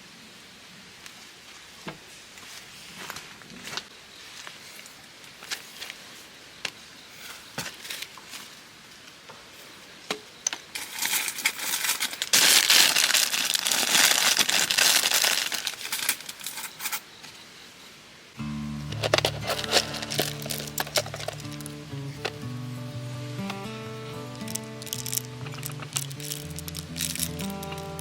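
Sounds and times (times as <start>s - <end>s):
crinkling and crumpling: 2.4s - 6.2s, 10.5s - 17.1s, 18.9s - 22.4s, 24.3s - 28.0s
music: 18.4s - 28.0s.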